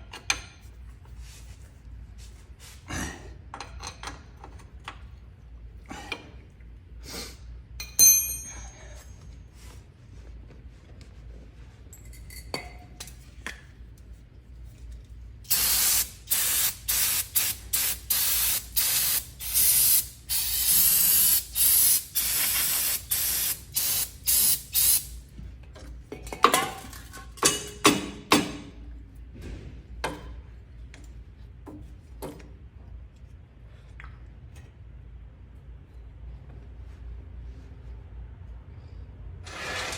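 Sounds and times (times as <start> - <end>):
pressurised spray bursts: 15.5 - 25.2.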